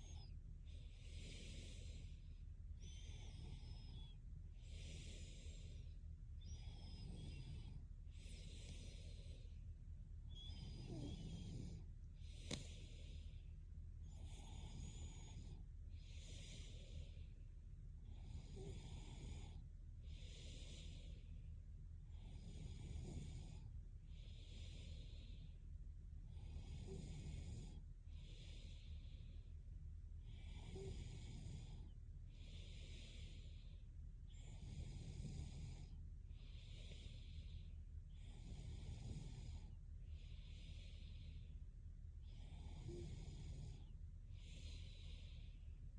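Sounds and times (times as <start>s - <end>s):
woman snoring faintly: 10.4s - 11.8s.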